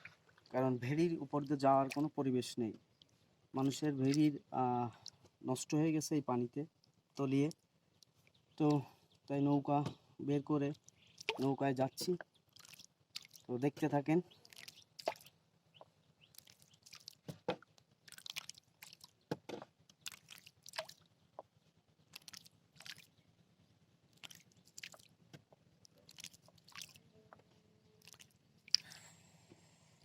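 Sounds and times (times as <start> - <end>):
water splashing from rowing: 0.0 - 2.2, 11.2 - 13.5
short wet ticks: 1.4 - 2.2, 2.9 - 4.3, 4.9 - 5.4, 6.7 - 8.9, 10.7 - 21.5, 22.1 - 23.1, 24.1 - 29.0.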